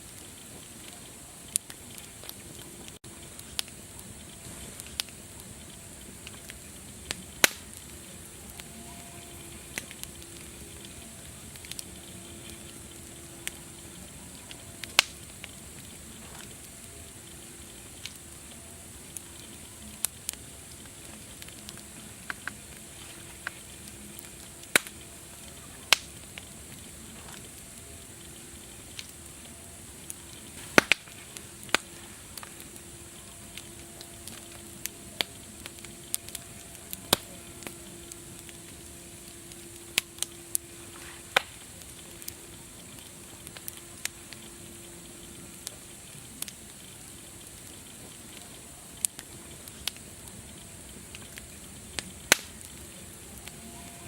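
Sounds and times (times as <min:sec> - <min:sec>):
steady high hiss: 0:00.0 - 0:54.0
wood fire crackling: 0:00.0 - 0:54.0.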